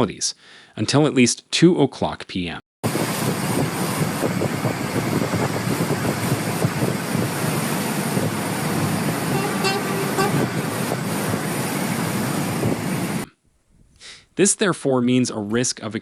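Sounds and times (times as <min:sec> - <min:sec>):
traffic: 0:02.9 - 0:13.3
car horn: 0:08.8 - 0:13.2.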